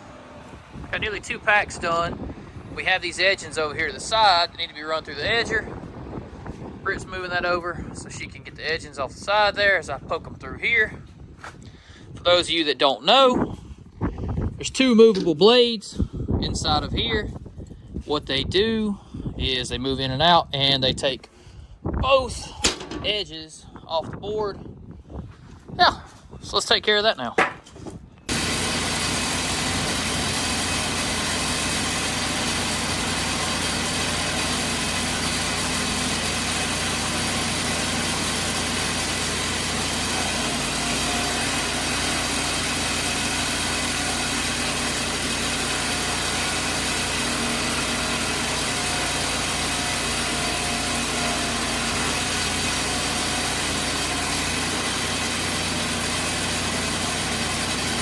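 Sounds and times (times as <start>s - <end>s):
board edger machine hum: 0.0s - 6.7s, 27.4s - 58.0s.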